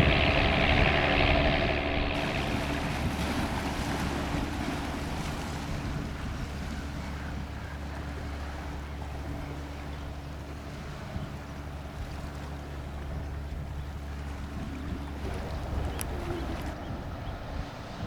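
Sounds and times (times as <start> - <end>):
wind noise: 0.0 - 9.2, 13.1 - 18.0
boat engine droning: 0.0 - 18.0.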